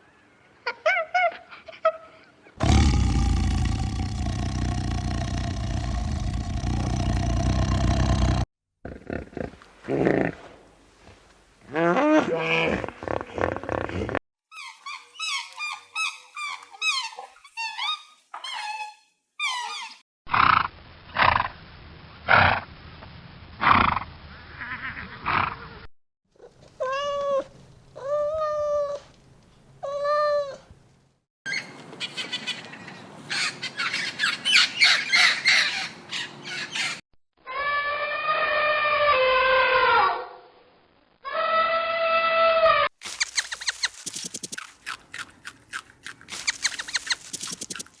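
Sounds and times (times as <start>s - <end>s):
pitched animal calls: 33.4s - 40.3s, 46.3s - 48.0s
rapid chirping: 43.0s - 48.0s.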